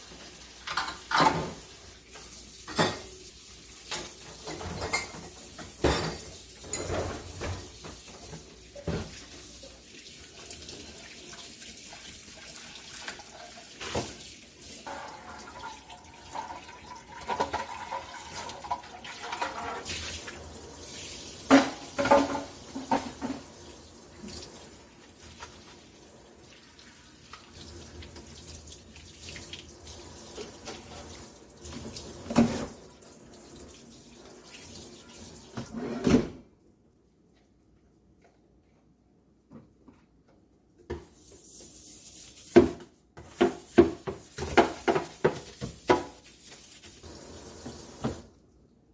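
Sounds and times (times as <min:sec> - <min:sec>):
dishes clattering: 0:00.6 - 0:03.2, 0:03.9 - 0:09.2, 0:14.8 - 0:20.0, 0:21.4 - 0:23.5
tap running into a sink: 0:47.5 - 0:48.3.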